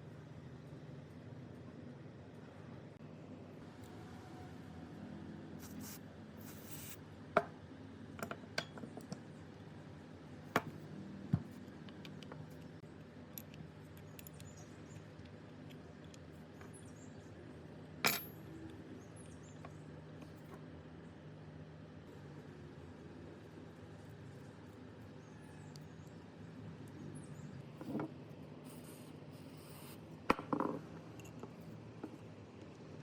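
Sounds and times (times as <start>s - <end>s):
small metal parts clinking: 13.3s - 17.0s, 18.0s - 18.6s.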